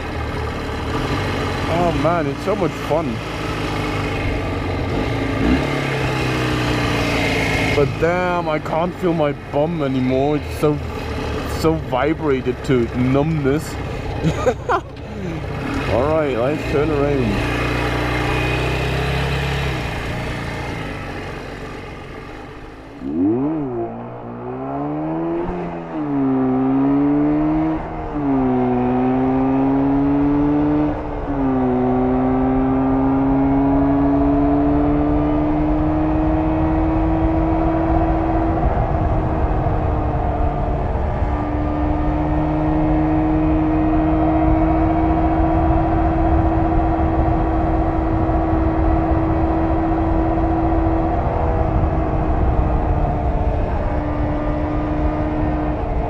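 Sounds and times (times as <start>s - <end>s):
two-stroke motorcycle engine: 0.0s - 38.5s.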